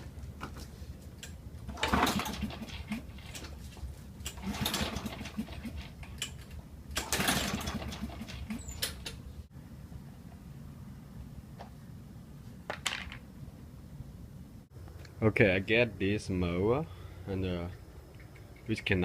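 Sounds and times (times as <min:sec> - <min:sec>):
mower engine cranking: 0:01.6 - 0:09.2
recoil starter pulled: 0:01.6 - 0:09.2.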